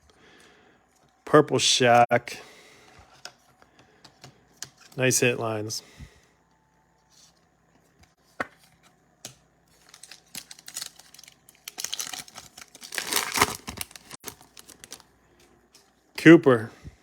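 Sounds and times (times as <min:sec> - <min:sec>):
foil wrapper tearing and crinkling: 0:09.7 - 0:15.1.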